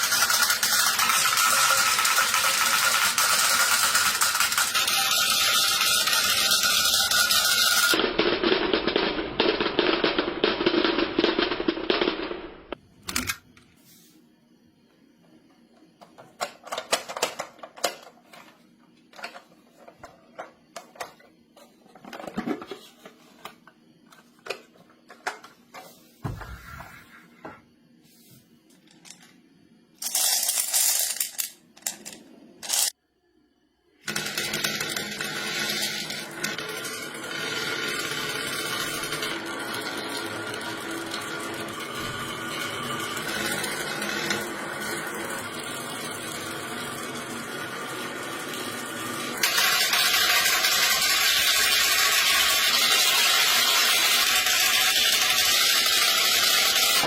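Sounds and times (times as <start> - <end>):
marbles clattering on plastic track: 0.0 - 12.3, 30.0 - 33.0, 34.1 - 57.0.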